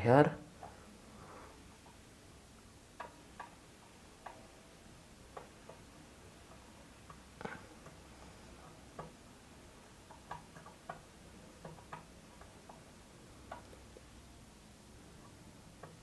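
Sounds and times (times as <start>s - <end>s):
small clicks and taps: 3.0s - 4.4s, 5.3s - 8.0s, 8.6s - 9.2s, 10.0s - 14.1s, 15.2s - 16.0s.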